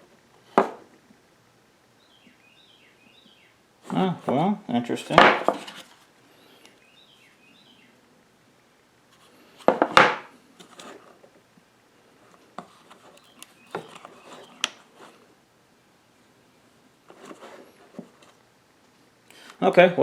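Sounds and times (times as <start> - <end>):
hands rubbing and rustling parts: 5.0 - 6.8, 9.1 - 11.3, 12.1 - 15.3, 17.0 - 19.6.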